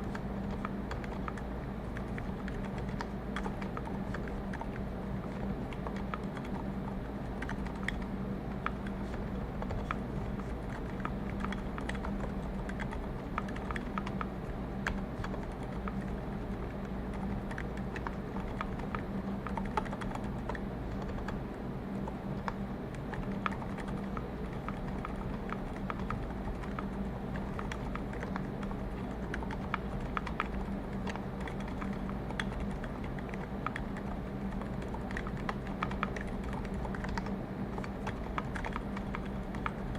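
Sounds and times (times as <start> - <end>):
muffled keyboard typing: 0.0 - 39.9
steady low room hum: 0.0 - 39.9.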